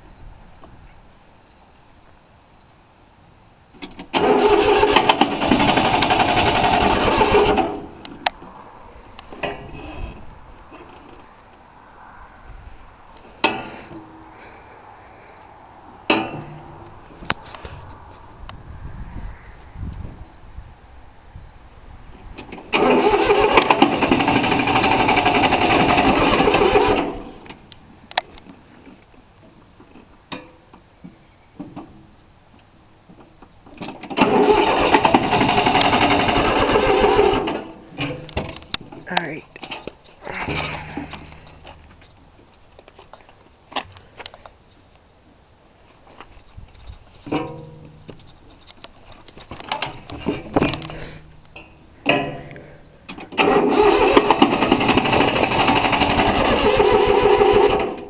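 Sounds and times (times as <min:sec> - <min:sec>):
starter motor cranking engine: 0:04.0 - 0:08.0, 0:22.5 - 0:27.5, 0:33.9 - 0:37.8, 0:53.3 - 0:58.0
starter clicks: 0:22.4 - 0:28.5, 0:33.8 - 0:43.0.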